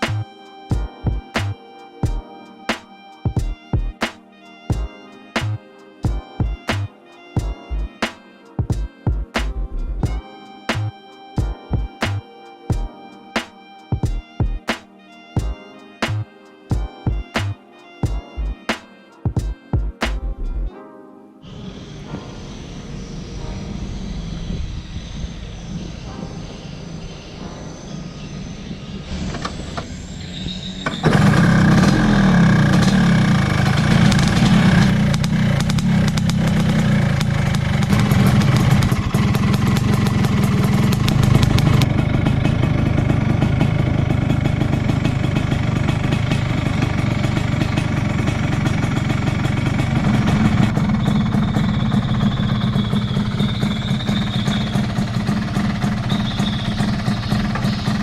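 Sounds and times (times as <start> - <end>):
two-stroke scooter engine running: 29.1 - 58.0.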